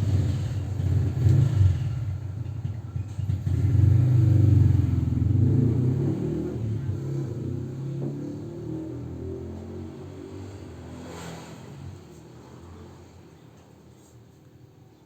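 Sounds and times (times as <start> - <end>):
vehicle engine rumbling: 0.0 - 9.8.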